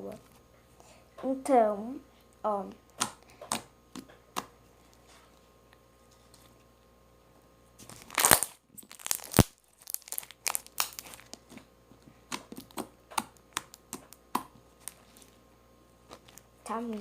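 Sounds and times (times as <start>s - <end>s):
slime sticky pops and crackles: 8.2s - 11.6s, 12.3s - 15.0s.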